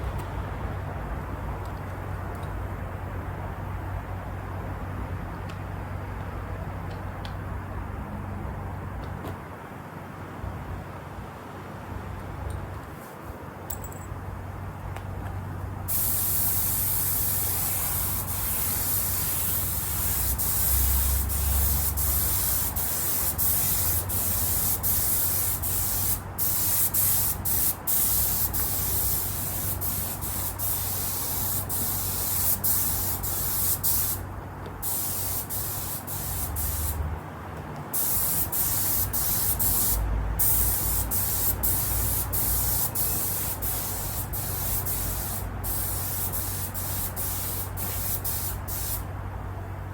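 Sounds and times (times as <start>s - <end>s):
spray gun hissing: 15.9s - 34.2s, 34.8s - 37.0s, 38.0s - 49.1s.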